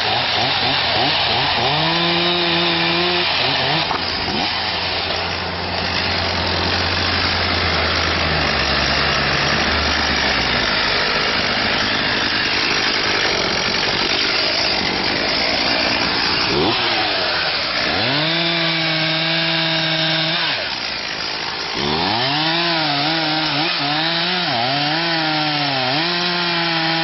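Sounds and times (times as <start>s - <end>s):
engine running: 0.0s - 27.0s
steady machine noise: 3.6s - 20.0s.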